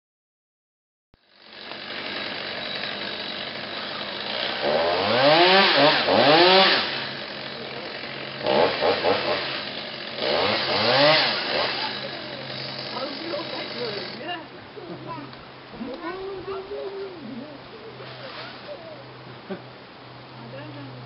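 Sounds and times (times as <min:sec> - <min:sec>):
chainsaw idling and revving: 0:01.2 - 0:15.3, 0:18.0 - 0:18.9.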